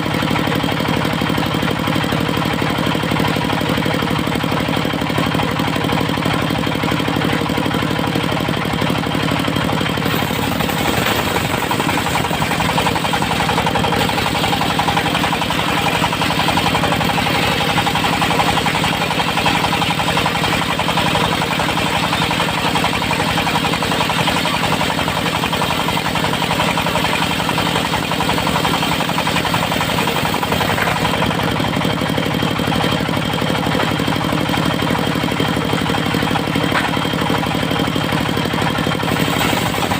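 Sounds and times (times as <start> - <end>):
circular sawmill running: 0.0 - 39.9
saw blade cutting wood: 10.0 - 31.5, 39.0 - 39.9.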